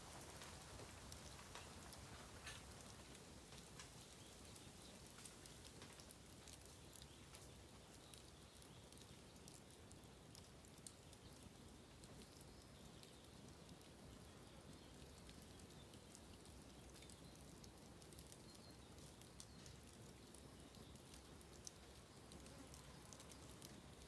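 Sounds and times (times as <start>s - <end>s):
fire crackling and popping: 0.0s - 24.0s.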